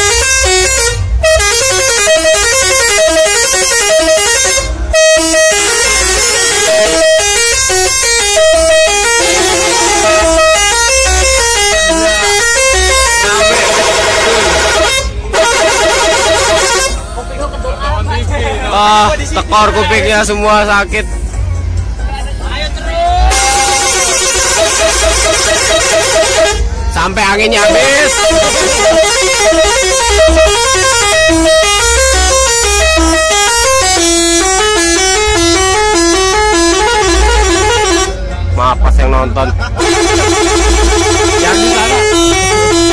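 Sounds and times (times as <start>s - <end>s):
multi-tone air horn tune: 0.0s - 17.0s, 23.3s - 26.8s, 27.6s - 38.3s, 39.8s - 42.9s.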